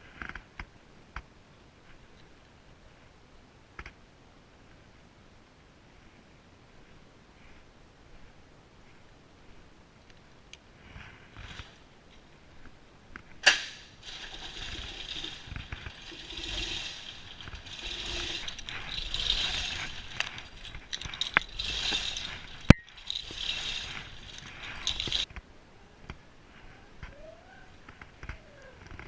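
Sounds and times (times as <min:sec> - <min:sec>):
metal clanks: 0:13.4 - 0:25.3
landing gear crank ratcheting: 0:14.0 - 0:25.3.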